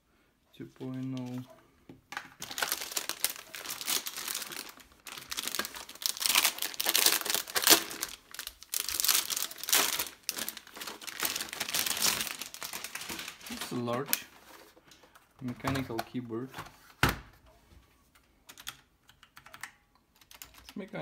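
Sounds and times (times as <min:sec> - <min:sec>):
packaging crinkling and rustling: 0:02.2 - 0:16.9.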